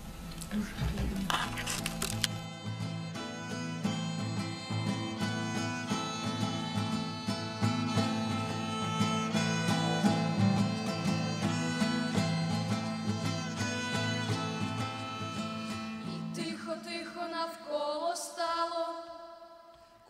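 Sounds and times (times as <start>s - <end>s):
instrumental music with plucked strings: 1.3s - 16.7s.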